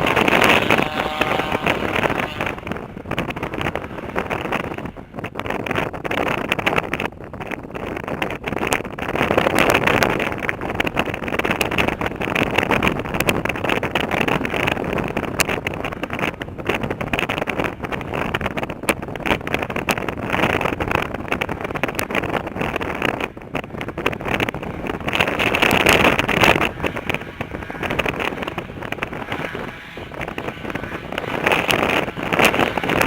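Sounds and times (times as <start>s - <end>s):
airboat engine and propeller: 0.0s - 5.8s, 20.6s - 33.0s
wind buffeting microphone: 0.0s - 33.0s.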